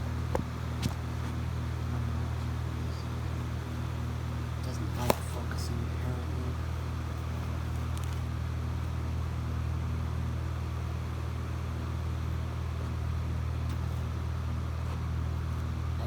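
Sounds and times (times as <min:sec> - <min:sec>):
electric fan humming: 0:00.0 - 0:16.0.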